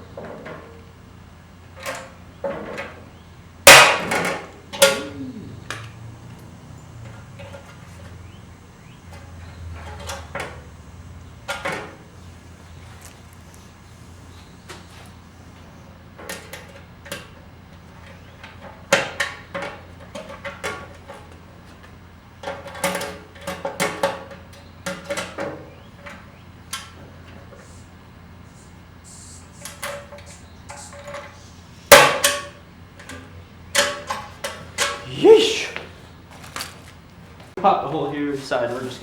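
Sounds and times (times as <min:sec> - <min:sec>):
faint low hum: 0:04.5 - 0:07.6.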